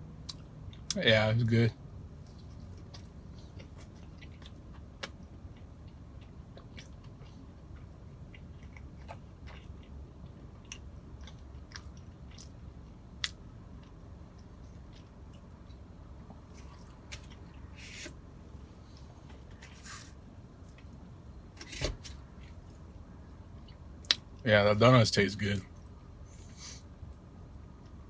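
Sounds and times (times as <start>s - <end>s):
chewing soft donut: 0.1s - 1.0s, 1.8s - 21.2s.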